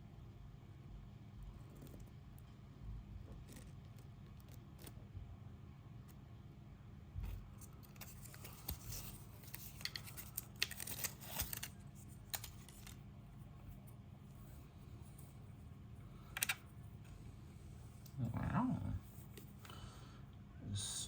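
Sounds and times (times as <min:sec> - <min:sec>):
packaging rustling and crinkling: 0:07.6 - 0:13.0.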